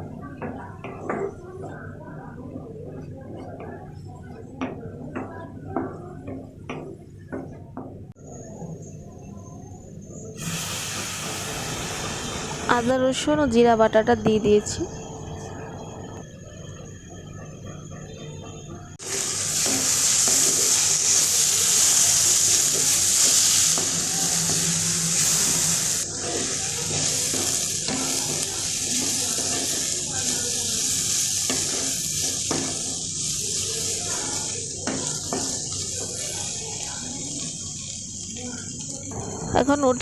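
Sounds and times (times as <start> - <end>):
onions sizzling in hot oil: 10.4 - 14.8, 18.5 - 40.0.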